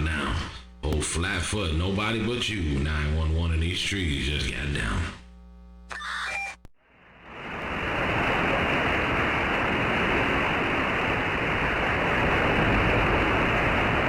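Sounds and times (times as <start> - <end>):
radio static hiss: 0.0 - 6.7.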